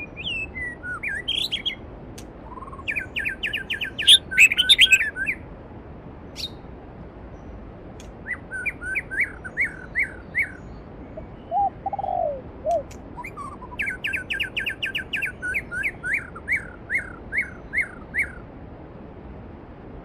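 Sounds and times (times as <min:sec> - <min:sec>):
bird whistled notes: 0:00.0 - 0:01.8, 0:02.5 - 0:05.4, 0:08.2 - 0:18.4
lower-pitched bird call: 0:00.0 - 0:01.8, 0:02.4 - 0:05.4, 0:06.4 - 0:06.7, 0:08.2 - 0:18.5
songbirds singing: 0:00.0 - 0:18.7.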